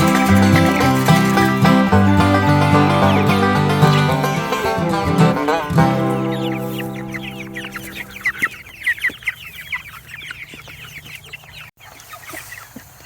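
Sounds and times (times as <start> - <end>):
music chord: 0.0 - 8.5
chicks peeping: 0.0 - 13.0.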